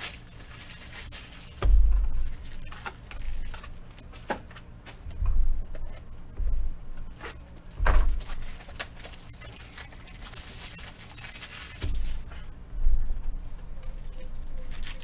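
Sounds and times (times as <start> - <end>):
foil wrappers rustling and tearing: 0.0 - 4.6, 6.6 - 12.4, 13.8 - 15.0.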